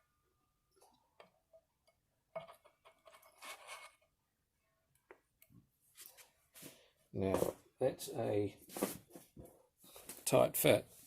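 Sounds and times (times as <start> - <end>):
rattling scrape with ring: 2.4 - 4.0.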